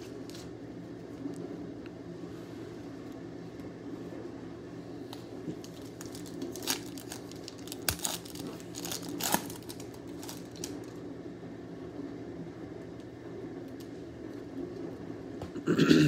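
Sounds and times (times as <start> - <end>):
quiet wrapper handling: 5.5 - 11.0
wrappers crinkling and ripping: 5.5 - 11.0.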